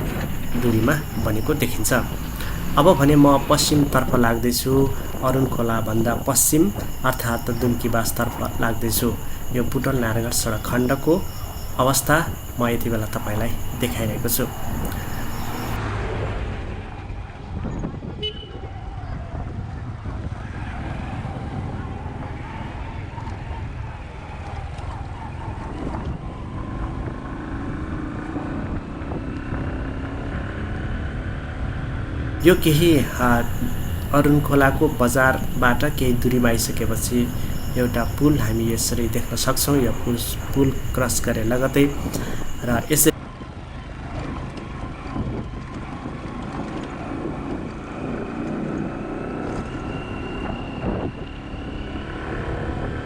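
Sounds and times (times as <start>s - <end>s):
vehicle engine rumble: 0.0s - 15.8s, 32.4s - 43.2s
wind buffeting microphone: 0.0s - 15.8s, 32.4s - 43.2s.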